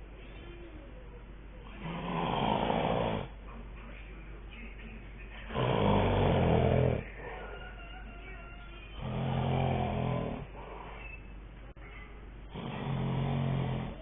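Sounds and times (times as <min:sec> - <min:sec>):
man snoring: 0:01.7 - 0:03.4, 0:05.5 - 0:07.1, 0:09.0 - 0:10.6, 0:12.5 - 0:14.0
quiet breathing: 0:09.0 - 0:11.4.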